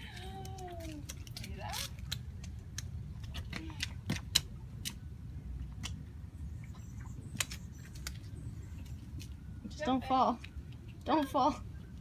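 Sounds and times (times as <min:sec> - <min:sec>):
steady low rumble: 0:00.0 - 0:12.0.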